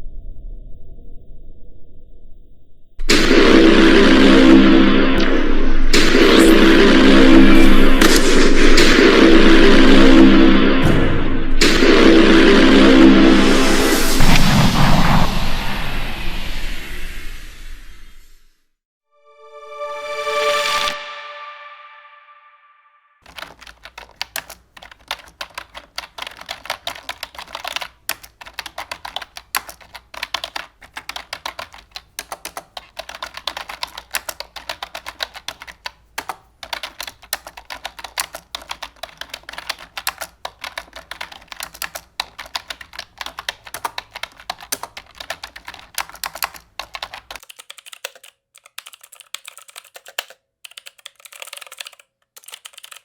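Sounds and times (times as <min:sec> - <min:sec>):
low hum: 0:00.0 - 0:18.2
typing on computer keyboard: 0:23.2 - 0:53.0.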